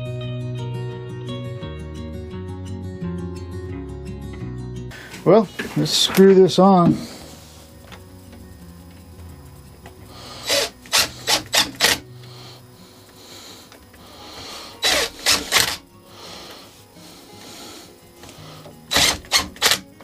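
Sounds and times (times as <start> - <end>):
screwdriver rasping strokes: 10.1 - 12.1, 13.1 - 15.8, 18.2 - 20.0.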